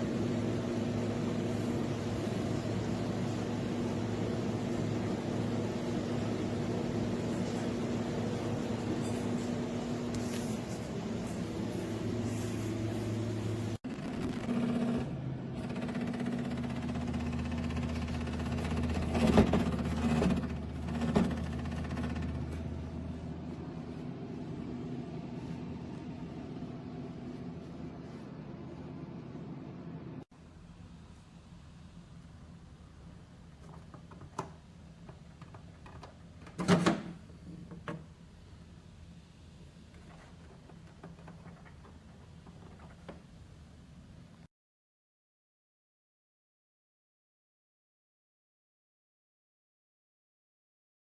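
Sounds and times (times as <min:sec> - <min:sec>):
steady low hum: 0:00.0 - 0:34.0.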